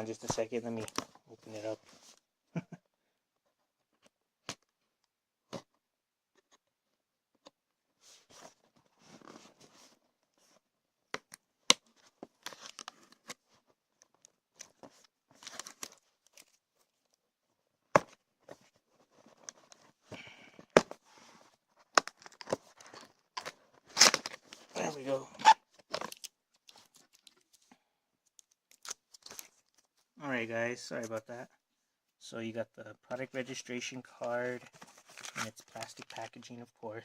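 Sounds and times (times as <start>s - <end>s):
cardboard and packaging tearing: 22.0s - 24.4s, 35.0s - 35.5s.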